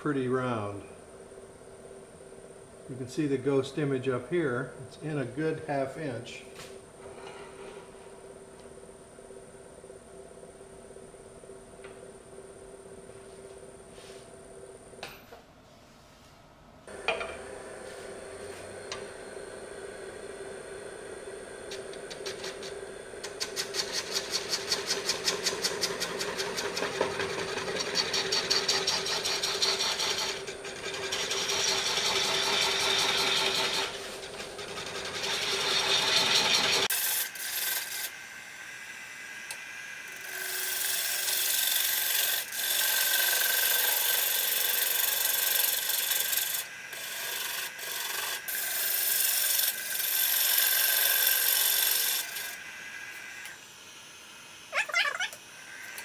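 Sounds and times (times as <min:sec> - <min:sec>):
lathe motor hum: 0:16.9 - 0:54.7.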